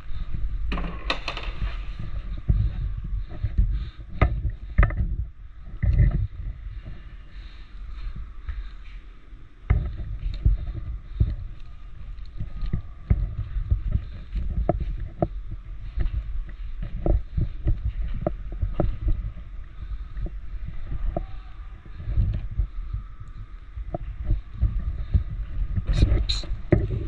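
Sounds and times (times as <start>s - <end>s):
steady low rumble: 0.0s - 27.0s
footsteps and gear knocking: 9.6s - 27.0s.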